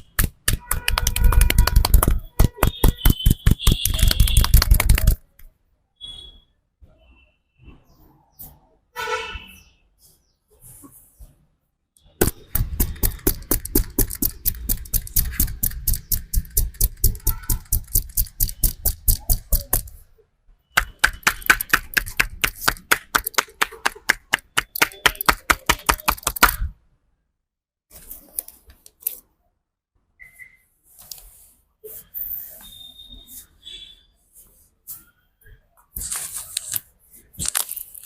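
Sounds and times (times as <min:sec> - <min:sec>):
hands striking in percussive massage: 0:00.0 - 0:05.2, 0:12.2 - 0:19.9, 0:20.8 - 0:26.7.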